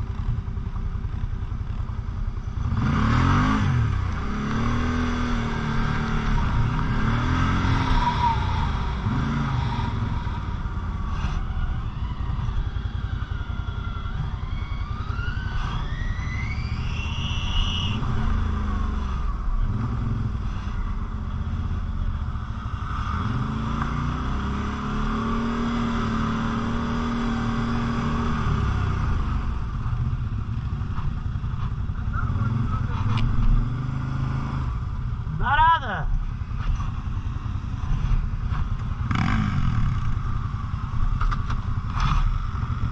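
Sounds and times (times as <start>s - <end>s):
atv engine revving: 0.0s - 35.4s, 36.6s - 42.9s
engine rising whine: 2.5s - 34.8s.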